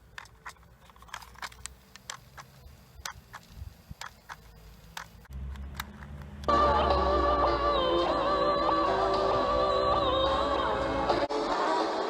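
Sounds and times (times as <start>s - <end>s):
low hum: 4.5s - 11.3s
music from tape: 6.5s - 12.0s.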